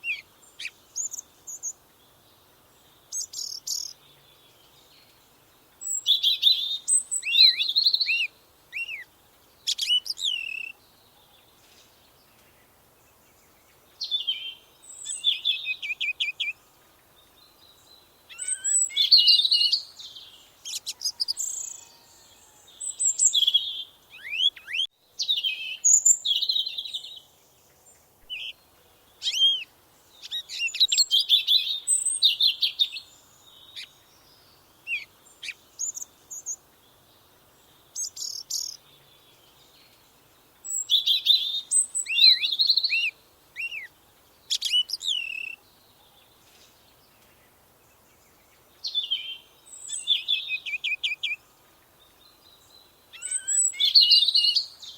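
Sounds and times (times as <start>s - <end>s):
songbird singing: 0.0s - 54.9s.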